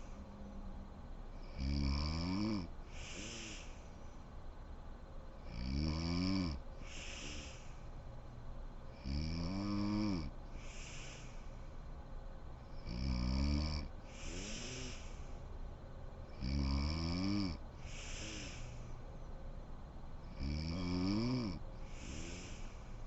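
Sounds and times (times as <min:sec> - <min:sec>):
woman snoring: 0:01.4 - 0:03.8, 0:05.5 - 0:07.7, 0:09.0 - 0:11.3, 0:12.8 - 0:15.2, 0:16.3 - 0:18.8, 0:20.3 - 0:22.8.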